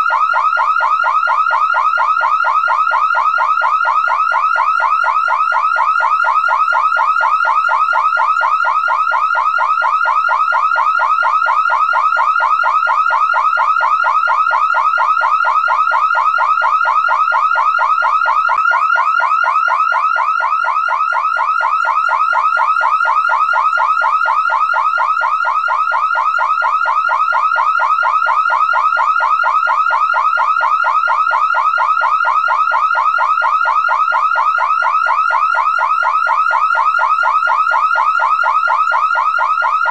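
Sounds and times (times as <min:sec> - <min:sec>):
car alarm siren: 0:00.0 - 0:39.9.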